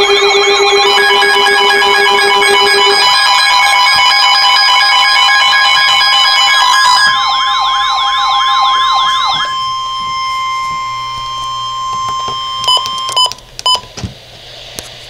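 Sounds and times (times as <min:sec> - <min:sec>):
warbling siren tone: 0:00.0 - 0:13.3
steady alarm tone: 0:00.0 - 0:13.8
short beeps: 0:08.4 - 0:13.9.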